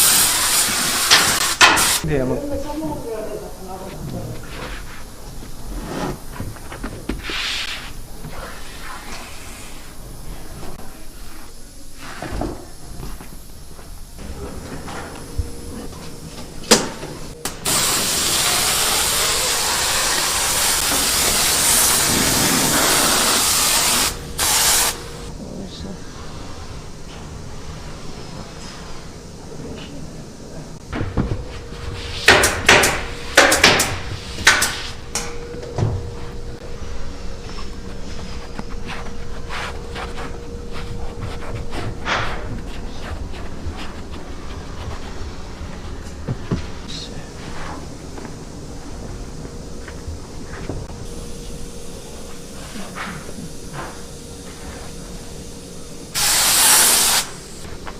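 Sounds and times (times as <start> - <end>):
pressurised jet hissing: 0.0 - 2.1, 17.5 - 25.3, 56.1 - 57.7
hand tools knocking and clicking: 32.3 - 35.4.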